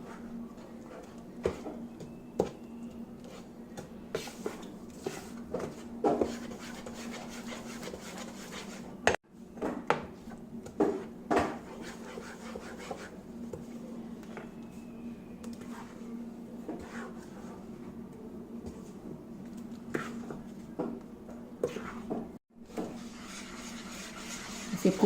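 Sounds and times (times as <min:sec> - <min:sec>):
spoon stirring batter in a bowl: 0:22.7 - 0:25.0.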